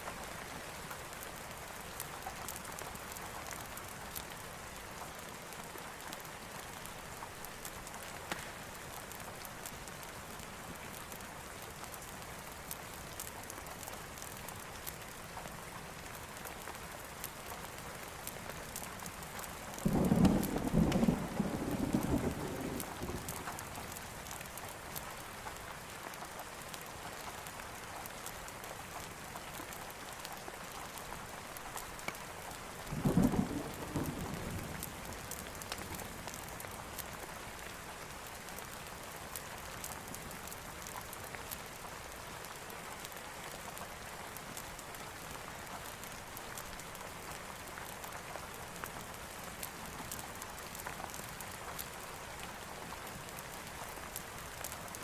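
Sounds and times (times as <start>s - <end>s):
steady rain: 0.0s - 55.0s
wood fire crackling: 0.3s - 55.0s
thunder rumbling: 19.9s - 23.4s.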